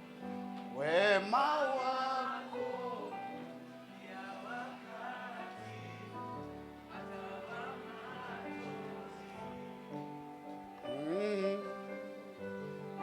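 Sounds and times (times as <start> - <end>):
gospel worship music chords: 0.0 - 13.0
person singing: 0.0 - 13.0.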